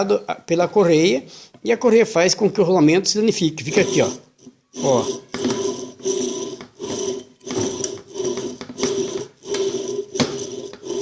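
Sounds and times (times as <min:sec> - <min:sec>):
washing machine motor rattling: 0:03.6 - 0:11.0
steady motor hum: 0:03.7 - 0:11.0.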